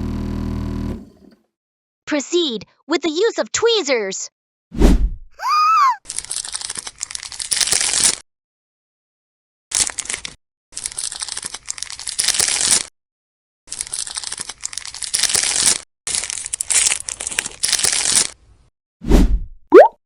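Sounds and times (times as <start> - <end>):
plastic packaging crinkling: 6.1 - 8.2, 9.7 - 12.9, 13.7 - 18.4.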